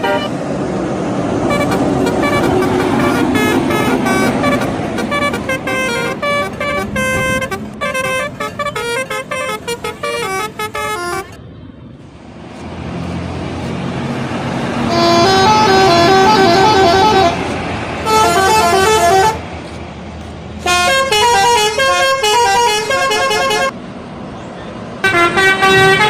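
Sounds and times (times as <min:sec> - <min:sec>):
multi-tone air horn melody: 0:00.0 - 0:00.3, 0:01.5 - 0:11.4, 0:14.8 - 0:19.4, 0:20.6 - 0:23.8, 0:25.0 - 0:26.0
bus engine: 0:00.0 - 0:26.0
road noise: 0:00.0 - 0:26.0.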